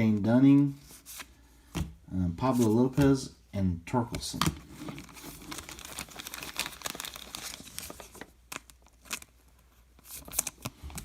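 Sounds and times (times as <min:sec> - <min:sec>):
wrapper crinkling: 0:04.8 - 0:11.0.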